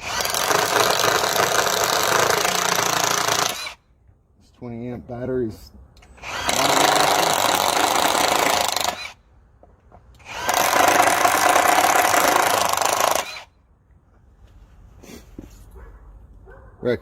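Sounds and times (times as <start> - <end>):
impact driver running: 0.0 - 3.8, 10.2 - 13.5.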